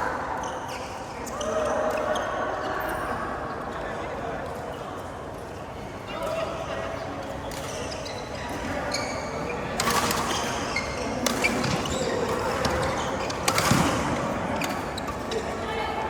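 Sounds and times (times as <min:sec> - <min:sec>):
shoes squeaking on court: 0:07.5 - 0:15.6.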